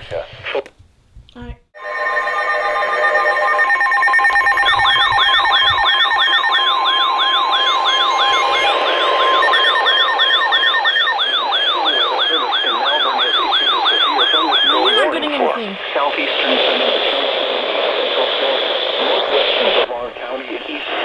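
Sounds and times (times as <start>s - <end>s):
fast siren-like warble: 1.8s - 15.8s
steady alert tones: 1.8s - 15.8s.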